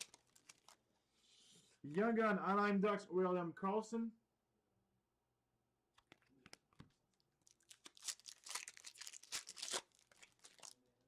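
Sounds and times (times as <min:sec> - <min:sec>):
foil wrapper crinkling and tearing: 0:00.0 - 0:00.8, 0:07.4 - 0:10.8.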